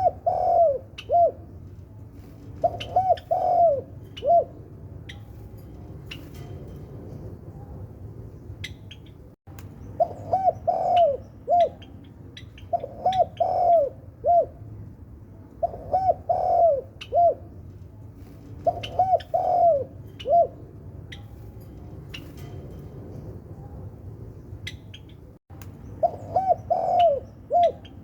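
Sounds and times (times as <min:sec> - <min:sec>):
dove cooing: 0:00.0 - 0:01.6, 0:02.6 - 0:04.7, 0:10.0 - 0:11.9, 0:12.5 - 0:14.6, 0:15.6 - 0:17.6, 0:18.6 - 0:21.2, 0:26.0 - 0:28.0.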